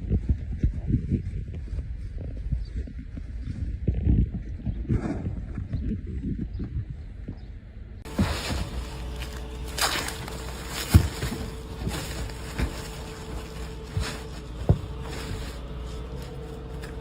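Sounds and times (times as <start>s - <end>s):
steady low hum: 6.8s - 17.0s
sharp knocks and thumps: 8.1s - 17.0s.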